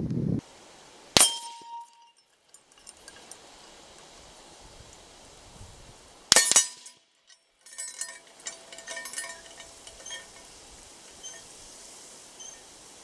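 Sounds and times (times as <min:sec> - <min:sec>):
light metallic clicks: 0:06.3 - 0:11.8.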